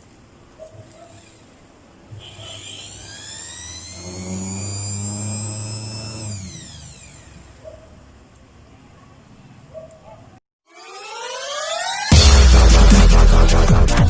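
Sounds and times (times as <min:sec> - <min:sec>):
mixer grinder motor whine: 0:00.8 - 0:07.6.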